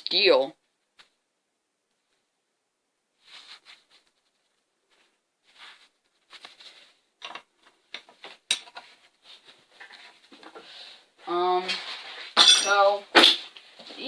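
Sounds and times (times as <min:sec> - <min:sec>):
metal wrenches rustling and clicking: 0:07.2 - 0:09.0.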